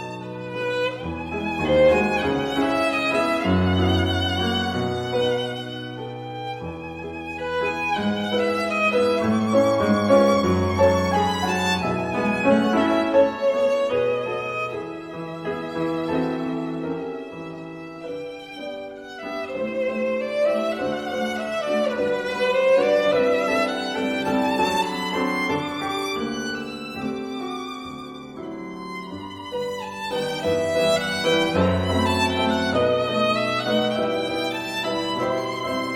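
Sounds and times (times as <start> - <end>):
violin slow melody: 0.0 - 35.9.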